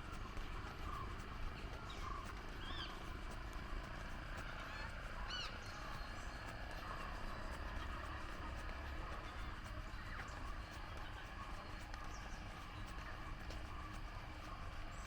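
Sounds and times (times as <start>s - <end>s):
low outdoor background rumble: 0.0s - 15.0s
small birds chirping: 0.0s - 15.0s.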